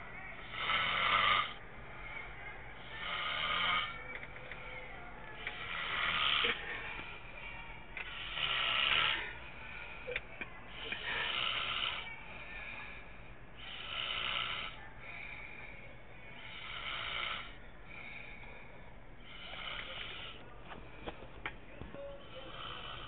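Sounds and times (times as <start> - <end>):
soft breaths: 0.0 - 23.0
man snoring: 0.4 - 1.6, 3.0 - 4.0, 5.5 - 6.6, 8.1 - 9.4, 10.8 - 12.1, 13.6 - 14.8, 16.4 - 17.6, 19.3 - 20.4, 22.2 - 23.0.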